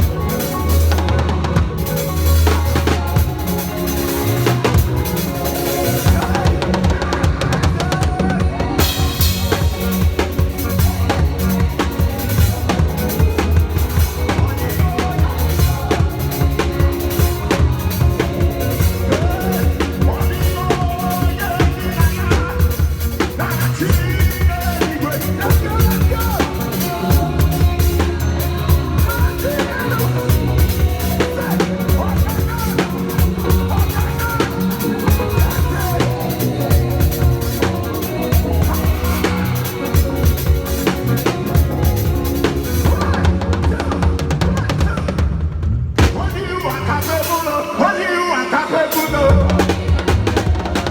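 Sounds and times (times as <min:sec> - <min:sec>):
drum kit beat: 0:00.0 - 0:47.8, 0:48.9 - 0:50.9
live band playing upbeat music: 0:00.0 - 0:50.9.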